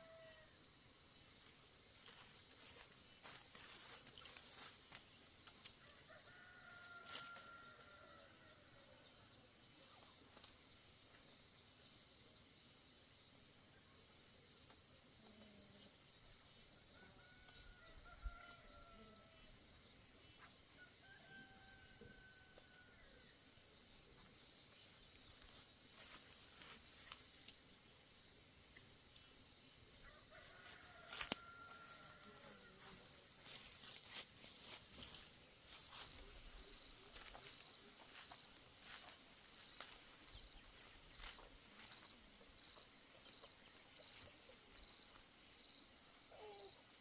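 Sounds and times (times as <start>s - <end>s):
faint rooster crowing: 0.0s - 0.6s, 5.5s - 9.3s, 16.6s - 23.5s, 29.9s - 44.2s.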